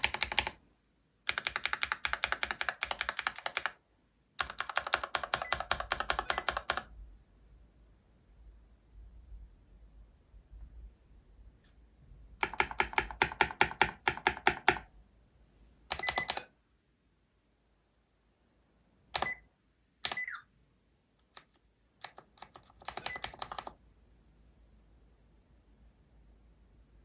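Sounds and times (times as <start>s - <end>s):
mechanical keyboard typing: 0.0s - 0.6s, 1.3s - 3.8s, 4.4s - 6.9s, 12.4s - 14.9s, 15.9s - 16.5s, 19.2s - 19.4s, 20.0s - 20.4s, 21.2s - 23.8s.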